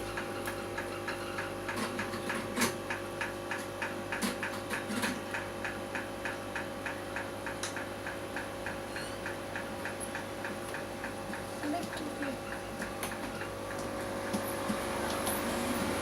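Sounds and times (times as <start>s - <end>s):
rapid mechanical ticking: 5.3s - 14.4s.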